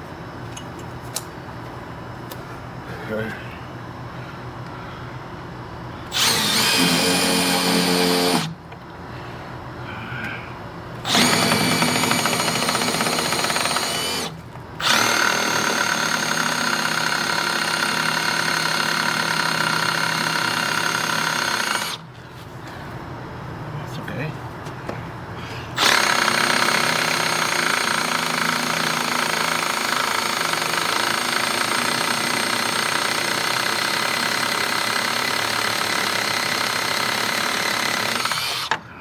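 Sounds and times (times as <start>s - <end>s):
power drill drilling into wood: 6.1s - 8.6s, 11.1s - 22.0s, 25.8s - 38.8s.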